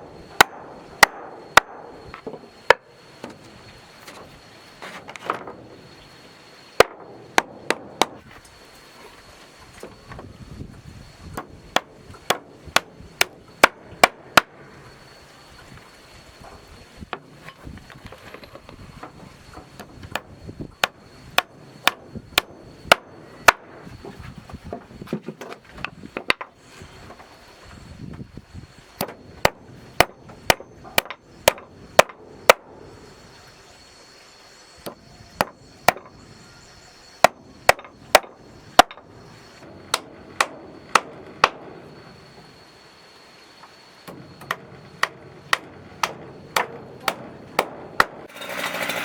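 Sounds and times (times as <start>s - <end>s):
hammer blows on wooden planks: 29.0s - 33.0s, 44.1s - 49.0s.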